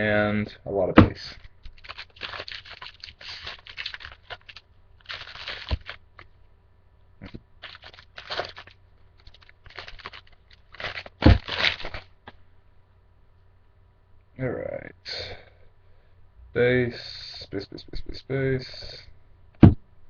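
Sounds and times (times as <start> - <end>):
foil wrapper crinkling and tearing: 1.3 - 6.2, 7.2 - 12.2
low thump: 19.6 - 19.8.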